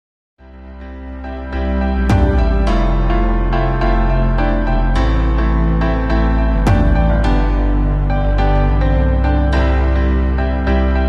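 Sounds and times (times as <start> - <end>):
soft piano music: 0.4 - 11.0.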